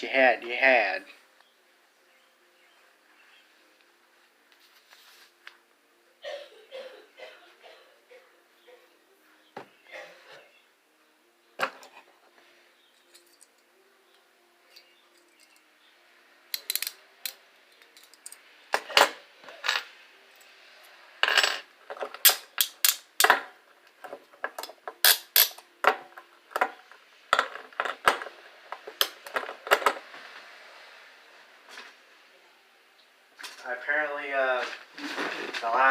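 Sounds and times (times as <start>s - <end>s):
metal handcuffs clinking: 13.0s - 13.7s, 16.6s - 18.4s, 22.1s - 23.4s, 25.0s - 25.6s.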